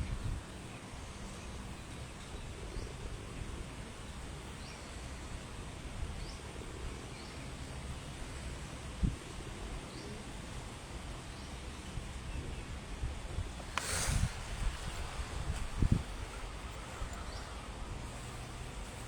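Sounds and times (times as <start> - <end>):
wind buffeting microphone: 12.0 - 19.0.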